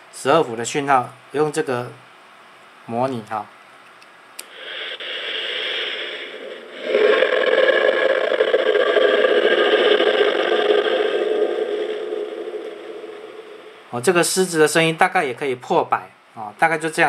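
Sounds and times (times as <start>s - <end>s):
lion roar through loudspeaker: 6.8s - 13.5s.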